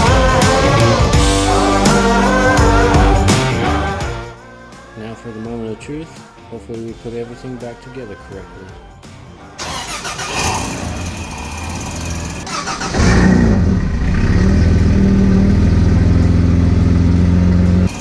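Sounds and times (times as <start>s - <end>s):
engine cranking on starter: 9.6s - 15.0s
engine revving and running: 9.6s - 17.9s.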